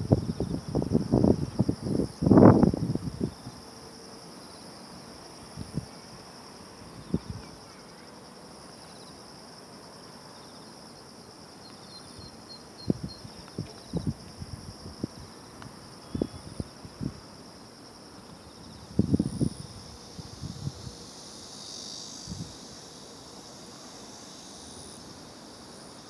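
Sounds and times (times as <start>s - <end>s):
wind buffeting microphone: 0.0s - 3.6s, 12.9s - 15.3s, 18.8s - 21.0s
insects chorus: 0.0s - 26.0s.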